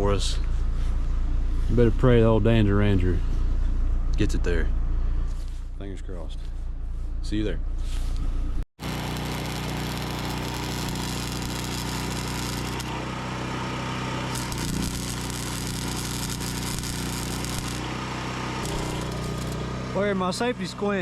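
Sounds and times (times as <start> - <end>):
machine humming with hiss: 8.8 - 13.1, 14.3 - 19.7.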